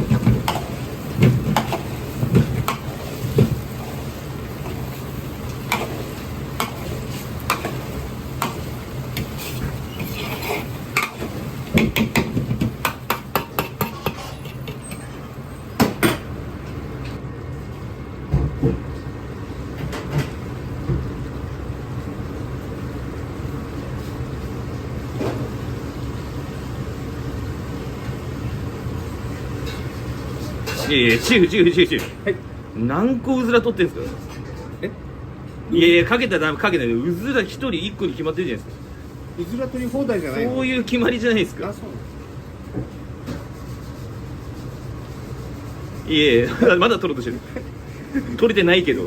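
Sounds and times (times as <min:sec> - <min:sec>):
metal cookware clanking: 0:05.7 - 0:15.1.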